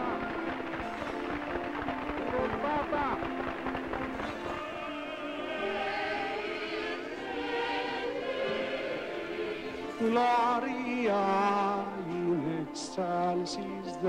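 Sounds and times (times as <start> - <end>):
choir singing: 4.3 - 14.0.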